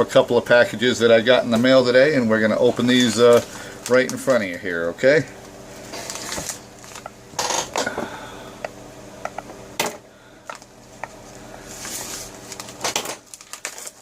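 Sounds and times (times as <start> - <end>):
steady low hum: 0.0 - 14.0
package rustling and tearing: 5.8 - 7.6, 10.5 - 14.0.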